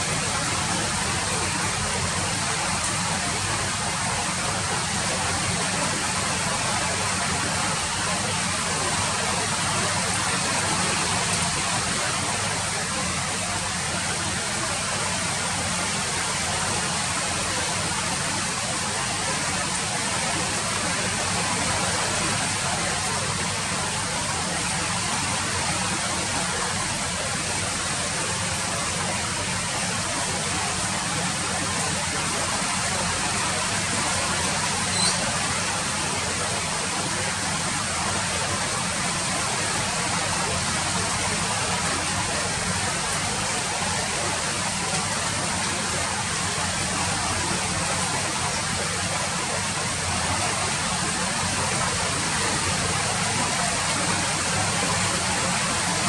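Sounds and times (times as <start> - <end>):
steady rain falling: 0.0 - 56.0.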